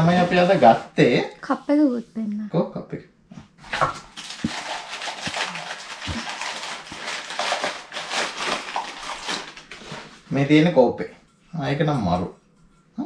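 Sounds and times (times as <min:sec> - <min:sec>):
rustling: 0:03.6 - 0:10.4.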